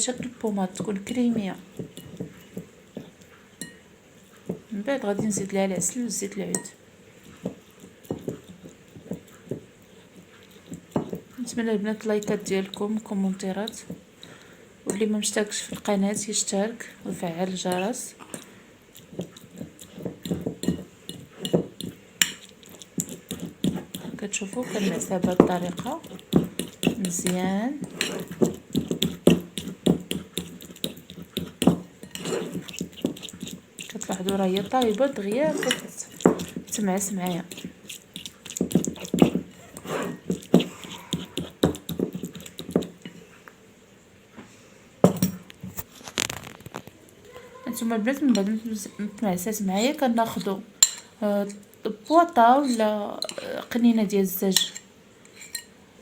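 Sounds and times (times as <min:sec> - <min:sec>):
fork mashing garlic: 0:00.0 - 0:14.2, 0:14.9 - 0:43.2, 0:47.8 - 0:53.7, 0:54.4 - 0:55.7
fork tapping dish: 0:19.0 - 0:43.0
fork clinking on dish: 0:35.4 - 0:36.5.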